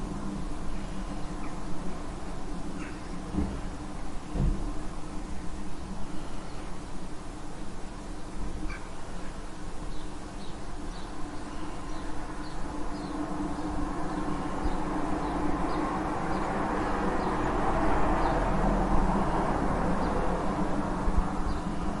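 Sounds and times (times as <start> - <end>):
traffic noise: 0.0 - 22.0
vehicle passing: 13.8 - 22.0.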